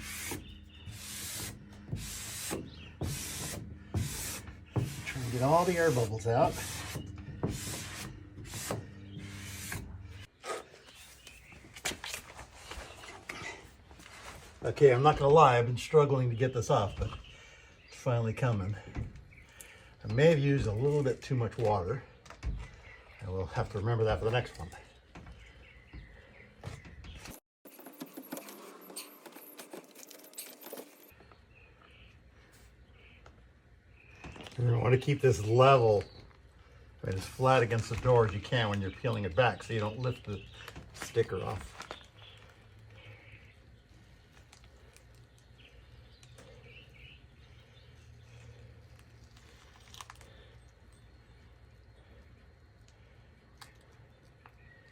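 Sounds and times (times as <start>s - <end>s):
faint bird chirps: 38.6s - 54.9s
tape peeling with small crackles: 43.9s - 46.6s, 48.3s - 50.5s.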